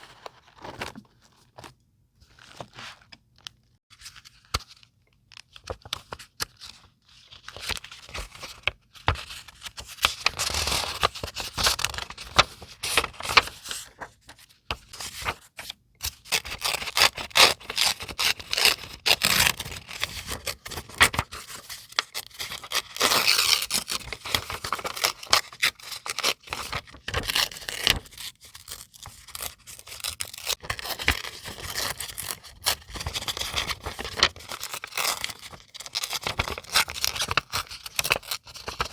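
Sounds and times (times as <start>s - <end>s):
paper rustling and scraping: 0.0s - 3.1s, 17.2s - 38.9s.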